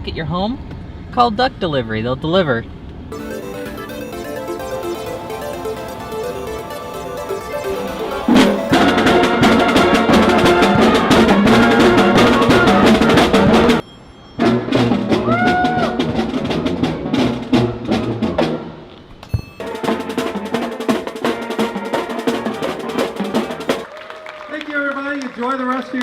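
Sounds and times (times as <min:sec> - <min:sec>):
music with drums and percussion: 0:03.1 - 0:13.8, 0:19.4 - 0:23.9.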